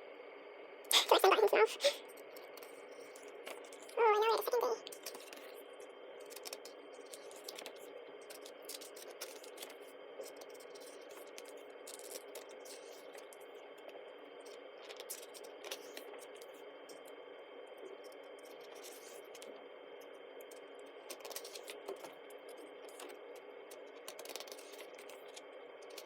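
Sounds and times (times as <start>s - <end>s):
paper rustling and clicks: 24.0s - 26.0s.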